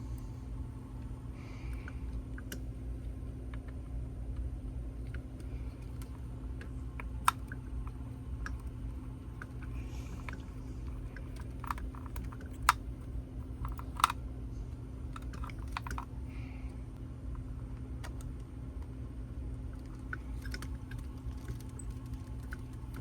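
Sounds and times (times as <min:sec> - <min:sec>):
steady low hum: 0:00.0 - 0:23.0
tools and parts clicking: 0:13.5 - 0:14.2.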